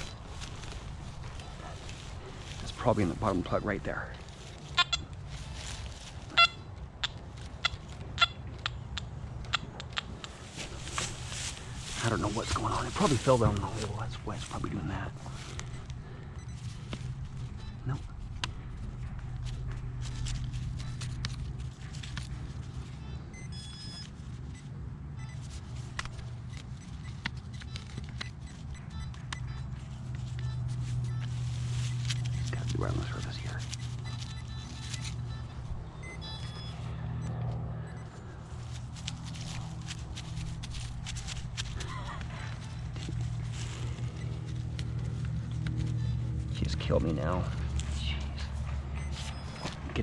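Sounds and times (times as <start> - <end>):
soil and roots crunching: 0.0 - 8.6, 9.9 - 16.2, 29.0 - 35.9, 38.4 - 50.0
low steady rumble: 0.0 - 50.0
steady low hum: 0.0 - 50.0
metal detector chirps: 4.6 - 5.2, 6.2 - 14.1, 17.4 - 18.0, 23.0 - 24.1, 26.5 - 38.8, 49.0 - 50.0
sharp ticks: 7.0 - 10.4.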